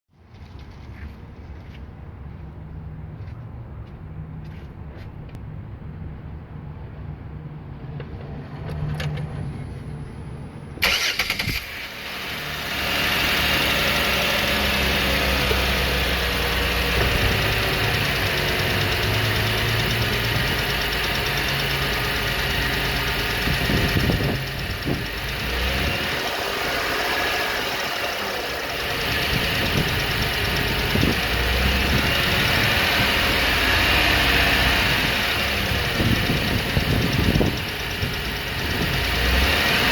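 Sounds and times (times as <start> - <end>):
car engine running: 10.8 - 39.9
engine ticking: 10.8 - 39.9.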